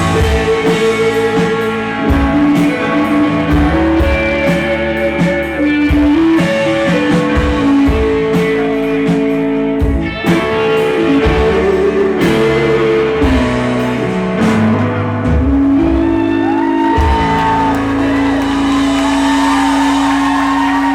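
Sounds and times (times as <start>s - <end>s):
live rock band playing: 0.0s - 20.9s.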